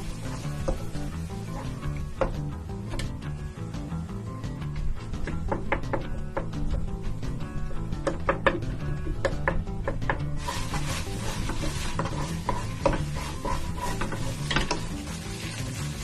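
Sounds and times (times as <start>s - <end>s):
background music: 0.0s - 16.0s
utensil taps: 8.0s - 10.3s
utensil scraping rice in shell: 10.4s - 16.0s.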